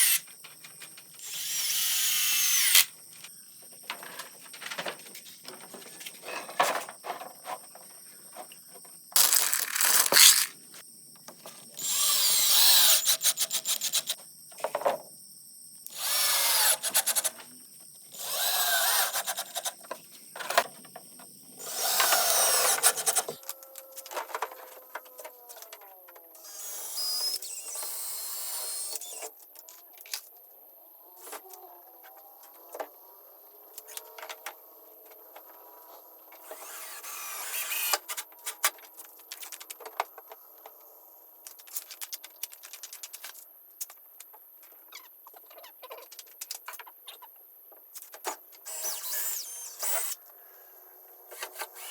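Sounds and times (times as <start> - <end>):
power drill bursts: 0.0 - 0.2, 1.2 - 2.9, 9.2 - 10.6, 11.8 - 14.2, 15.9 - 17.4, 18.1 - 19.6, 21.6 - 23.4, 36.4 - 38.0, 48.6 - 50.2, 51.4 - 51.9.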